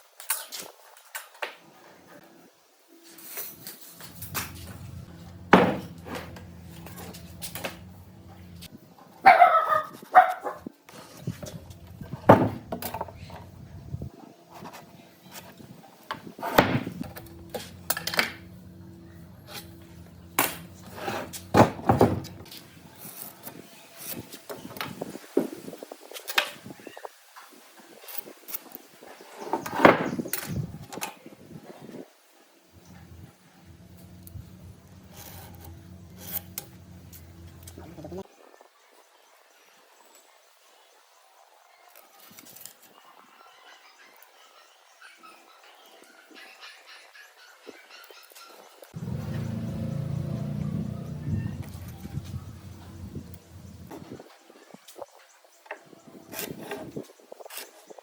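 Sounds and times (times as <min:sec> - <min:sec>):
workshop knocks and clunks: 0:04.2 - 0:07.9, 0:11.4 - 0:13.4, 0:16.1 - 0:18.4, 0:20.3 - 0:22.5.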